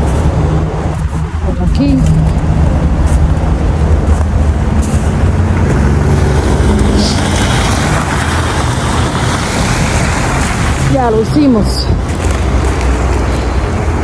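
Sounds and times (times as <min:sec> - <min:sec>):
vehicle engine rumbling: 0:00.0 - 0:14.0.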